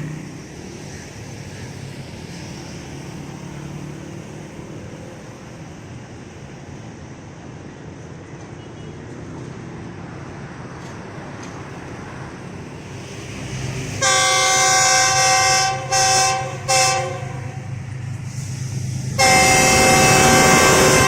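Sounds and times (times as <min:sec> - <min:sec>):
locomotive engine rumble: 0:05.6 - 0:21.0
locomotive horn blasts: 0:14.0 - 0:17.8, 0:19.2 - 0:21.0.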